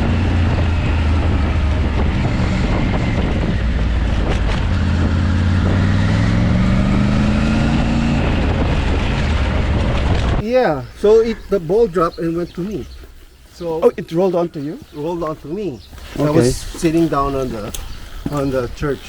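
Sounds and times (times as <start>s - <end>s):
motorcycle engine accelerating: 0.0s - 10.4s
wind noise: 0.0s - 19.0s.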